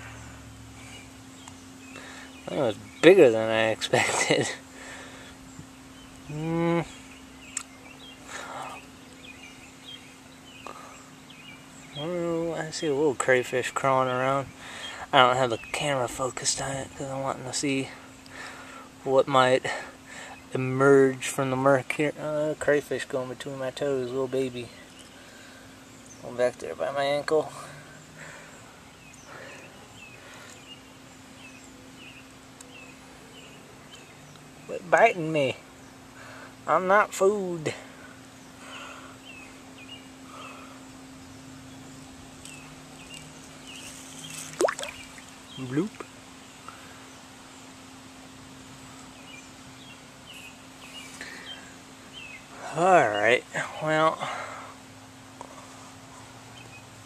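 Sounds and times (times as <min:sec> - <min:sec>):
creek water hissing: 0:00.0 - 0:21.4, 0:24.0 - 0:57.0
small bird chirping: 0:05.4 - 0:13.0, 0:38.3 - 0:47.7
soft swish of water: 0:43.8 - 0:45.4.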